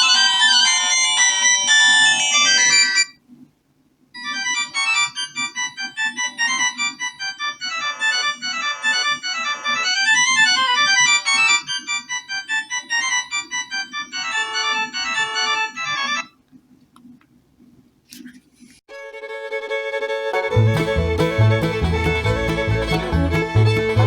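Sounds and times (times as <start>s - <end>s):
phone ringtone melody: 4.2s - 16.3s.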